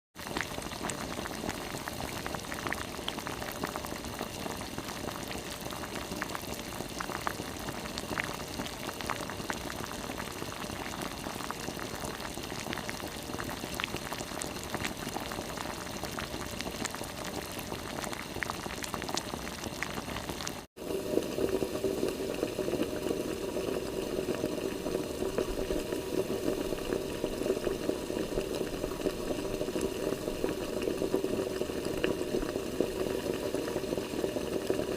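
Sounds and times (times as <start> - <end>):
water bubbling at a boil: 0.2 - 34.9
steady water sound: 20.2 - 34.9.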